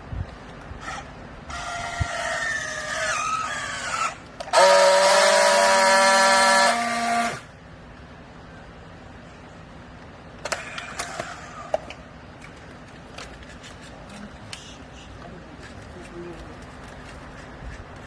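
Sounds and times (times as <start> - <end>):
loud horn-like tone: 4.5 - 7.5.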